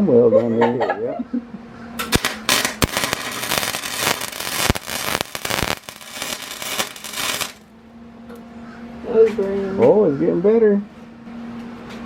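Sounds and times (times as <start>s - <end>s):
welding arc crackling and popping: 2.0s - 7.6s.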